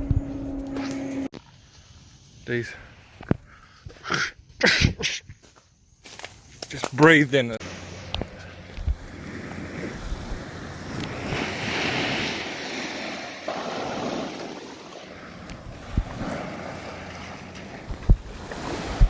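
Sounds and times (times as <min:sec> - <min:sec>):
sharp thumps: 0:00.0 - 0:01.3
wind on microphone: 0:00.0 - 0:01.3, 0:08.1 - 0:12.4, 0:15.5 - 0:19.0
waves washing on beach: 0:07.6 - 0:19.0.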